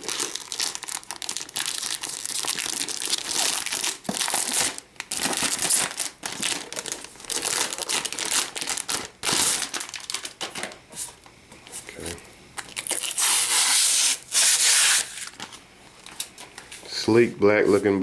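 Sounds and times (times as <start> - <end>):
plastic tearing: 0.0 - 10.8, 12.6 - 15.6
plastic wrapping crinkling: 0.0 - 11.3, 12.0 - 17.0.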